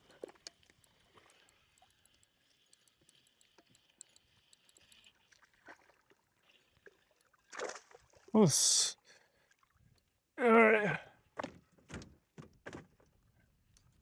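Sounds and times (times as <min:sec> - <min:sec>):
faint ticks and clicks: 0:00.0 - 0:05.5.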